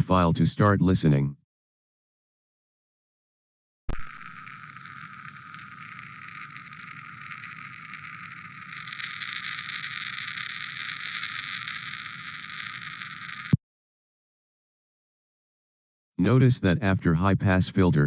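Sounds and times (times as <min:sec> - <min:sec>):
pump signal hiss: 0:03.9 - 0:08.7.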